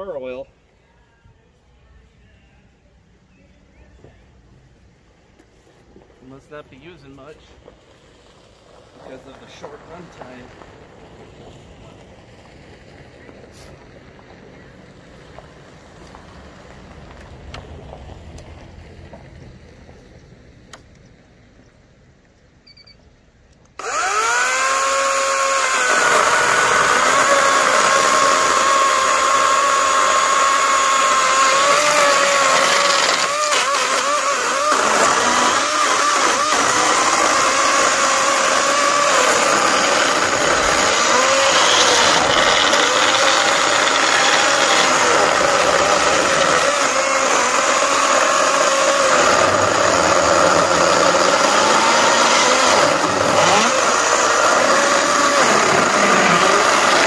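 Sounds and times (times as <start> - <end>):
electric chainsaw cutting wood: 9.1 - 10.4, 23.7 - 57.0.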